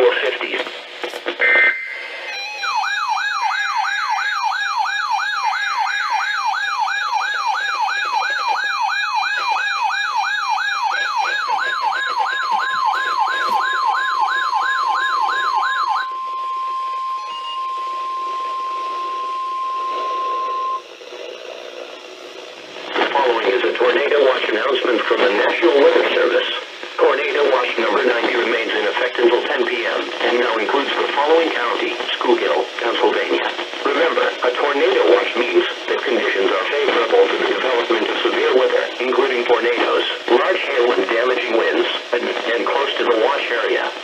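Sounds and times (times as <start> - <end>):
warbling siren: 1.4 - 21.0
steady warning alarm tone: 1.4 - 21.2.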